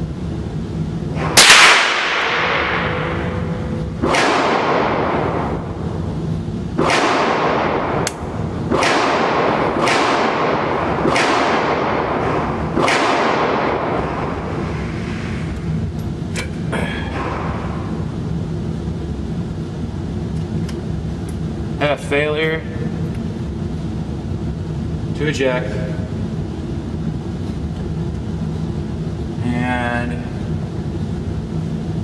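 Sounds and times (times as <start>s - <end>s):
rifle shots echoing indoors: 1.2s - 5.8s, 6.8s - 14.7s.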